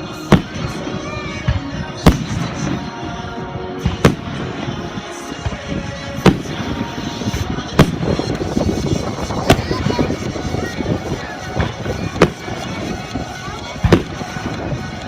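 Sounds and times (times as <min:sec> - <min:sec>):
background music: 0:00.0 - 0:15.0
fireworks bursting: 0:00.0 - 0:15.0
small fireworks pops: 0:07.3 - 0:15.0.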